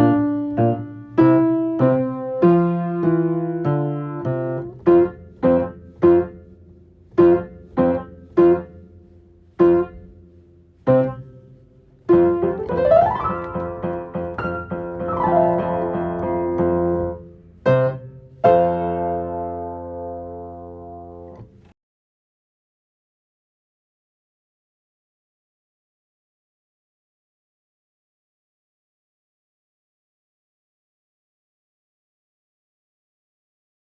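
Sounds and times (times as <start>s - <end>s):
solo piano playing: 0.0s - 21.5s.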